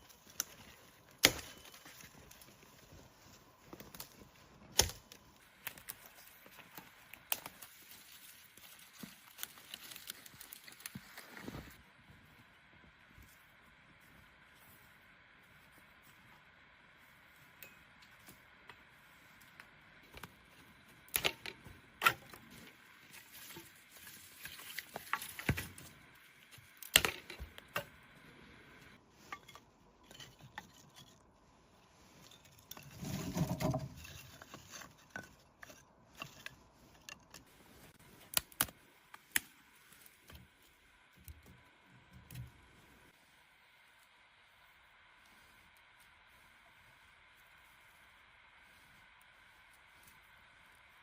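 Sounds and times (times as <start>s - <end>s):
faint steady hiss: 37.4s - 51.0s.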